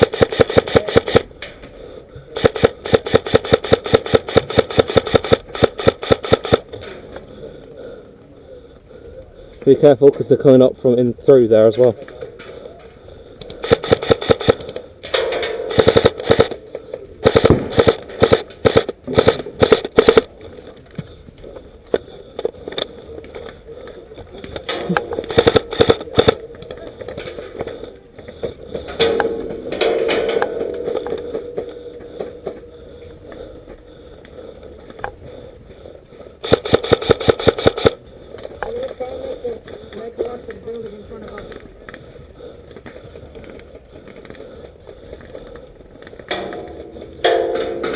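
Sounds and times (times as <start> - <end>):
airsoft rifle rapid shots: 0.0 - 1.3, 2.4 - 6.8, 13.6 - 14.7, 15.6 - 16.6, 17.2 - 20.3, 25.2 - 26.4, 36.4 - 38.0.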